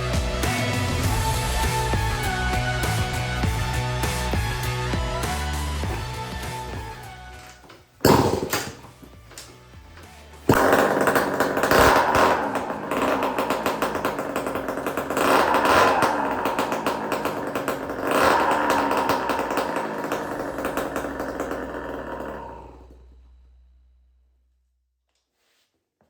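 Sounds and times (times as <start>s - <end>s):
two-stroke engine revving: 0.0s - 7.1s, 8.0s - 8.9s, 10.5s - 23.1s.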